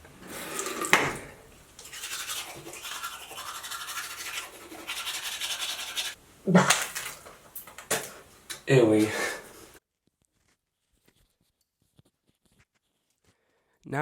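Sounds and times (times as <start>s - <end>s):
toothbrush scrubbing teeth: 0.3s - 9.8s, 10.8s - 13.4s.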